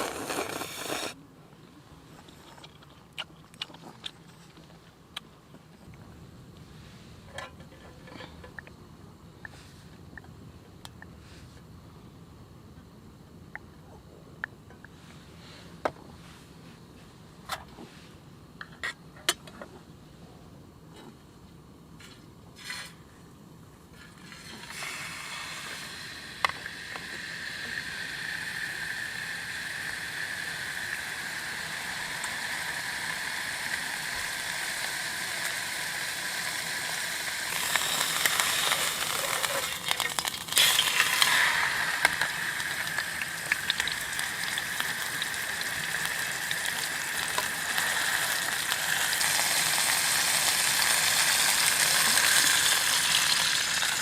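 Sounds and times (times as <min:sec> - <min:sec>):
food sizzling in a pan: 0:00.0 - 0:01.2, 0:24.2 - 0:54.0.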